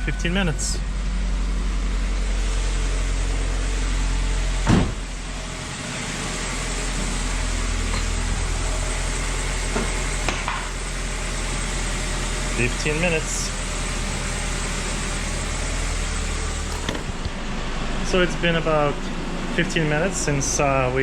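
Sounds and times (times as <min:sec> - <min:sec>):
car engine idling: 0:00.0 - 0:17.5
loud thump: 0:04.6 - 0:05.2, 0:16.7 - 0:17.3.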